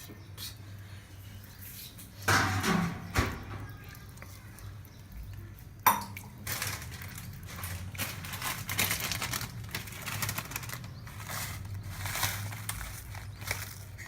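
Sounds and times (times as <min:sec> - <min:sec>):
utensils clattering against pot: 0:02.2 - 0:03.9.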